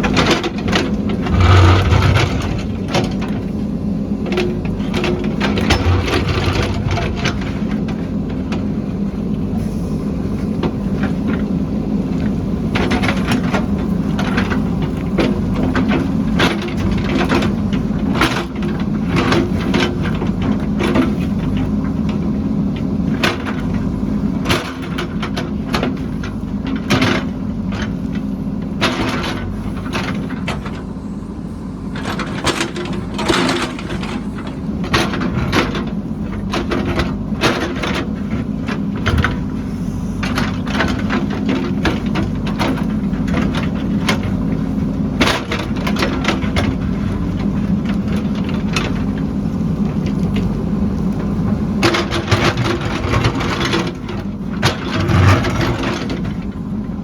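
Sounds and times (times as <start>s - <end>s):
heavy machine engine running: 0.0s - 57.0s
sharp cracks and clanks: 1.3s - 3.4s.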